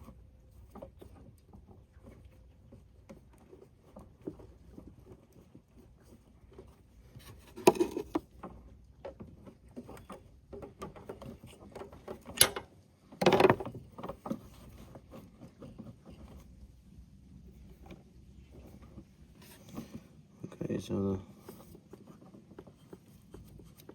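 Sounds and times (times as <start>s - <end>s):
tool clicks and knocks: 12.2s - 14.1s.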